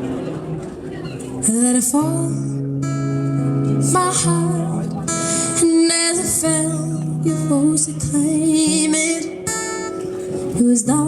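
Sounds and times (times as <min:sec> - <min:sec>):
acoustic guitar: 0:00.0 - 0:11.0
woman singing: 0:01.4 - 0:02.6, 0:03.8 - 0:04.8, 0:05.5 - 0:09.6, 0:10.5 - 0:11.0.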